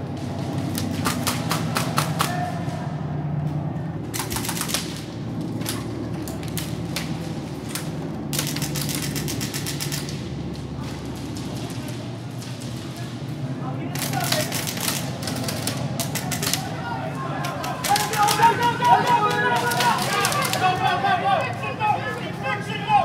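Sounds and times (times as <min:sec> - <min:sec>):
low hum: 0:00.0 - 0:23.0
airsoft guns firing: 0:00.3 - 0:02.8, 0:04.1 - 0:10.5, 0:13.9 - 0:21.0.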